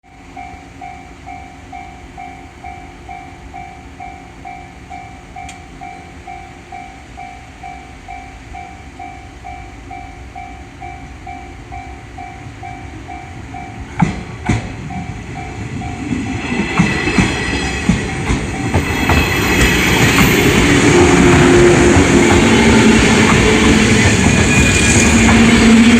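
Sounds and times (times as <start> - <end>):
railroad crossing bell ringing: 0.0 - 25.9
electric train approaching: 0.1 - 25.9
train wheels clacking over rail joints: 13.8 - 25.9.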